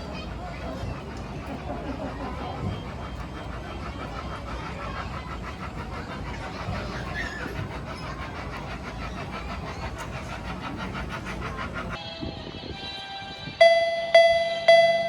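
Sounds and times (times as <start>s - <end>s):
mini train rumbling and clattering: 0.0s - 15.0s.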